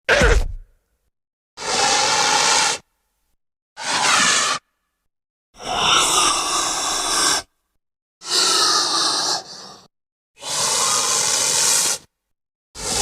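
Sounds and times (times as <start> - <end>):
raspy creature calls: 1.6 - 2.8, 3.8 - 4.7, 5.6 - 7.5, 8.2 - 9.8, 10.4 - 12.1.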